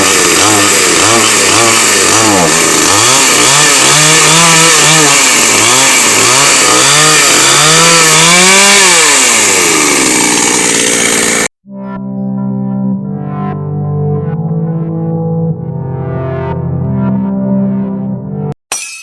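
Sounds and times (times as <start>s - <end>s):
chainsaw engine revving: 0.0s - 11.5s.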